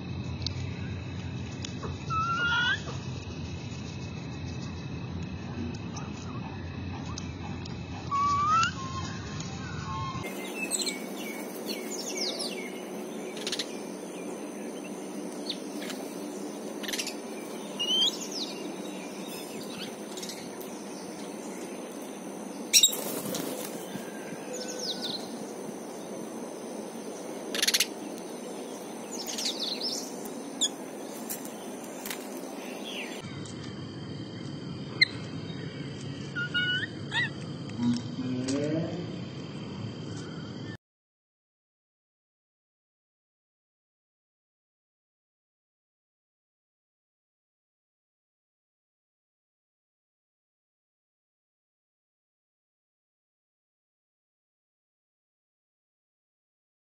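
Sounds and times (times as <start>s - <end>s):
small birds chirping: 0.1s - 38.0s.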